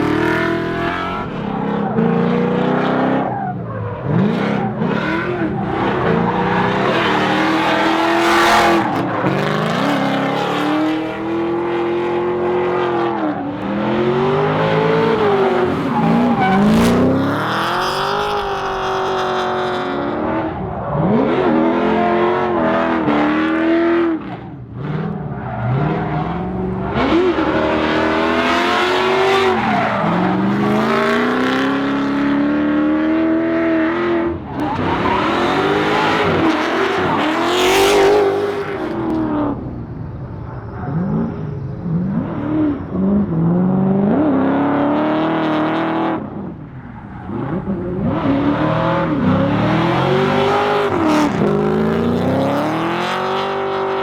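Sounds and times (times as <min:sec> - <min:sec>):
car engines revving hard: 0:00.0 - 0:54.0
tires squealing: 0:00.0 - 0:54.0.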